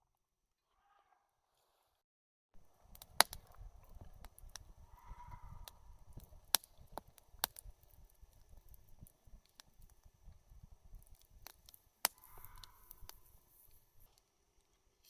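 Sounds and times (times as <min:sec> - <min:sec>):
low fire rumble: 0:02.6 - 0:14.1
campfire crackling and popping: 0:02.6 - 0:14.9.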